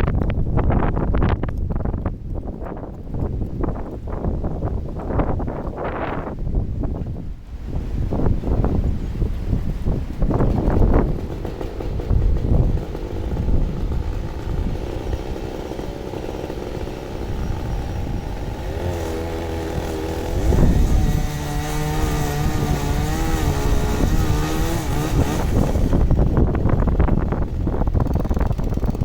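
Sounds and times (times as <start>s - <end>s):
low rumbling noise: 0.0s - 29.0s
small engine running: 10.0s - 29.0s
steady engine tone: 10.0s - 29.0s.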